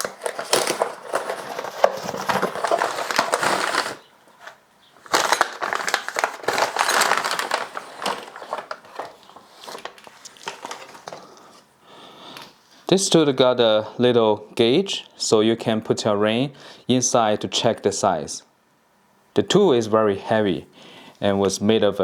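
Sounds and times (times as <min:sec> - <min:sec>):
cardboard packaging rustling: 0:00.0 - 0:11.6.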